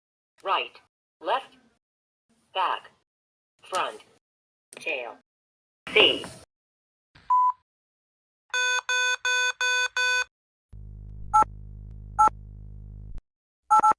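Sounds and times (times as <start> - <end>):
low steady buzz: 10.8 - 13.2.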